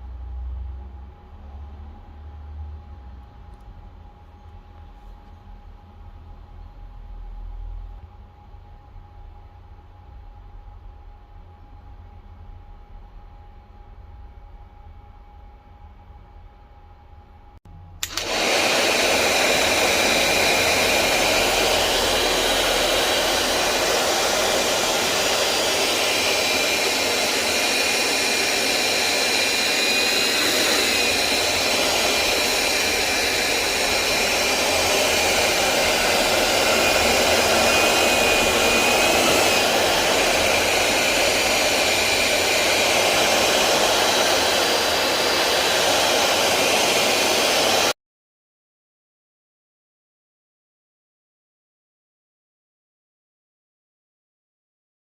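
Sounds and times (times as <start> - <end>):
blower rushing air: 18.0 - 48.0.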